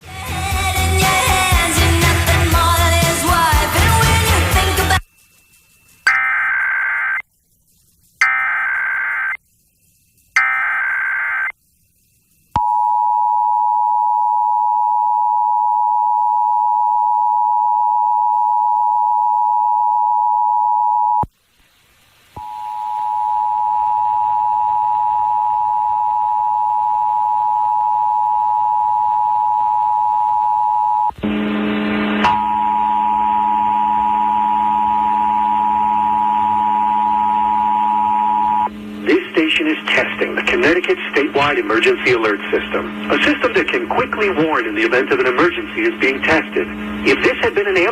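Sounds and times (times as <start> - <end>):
screechy digital bursts: 4.9 - 7.2, 8.2 - 12.4
two-tone attention signal: 6.0 - 7.2.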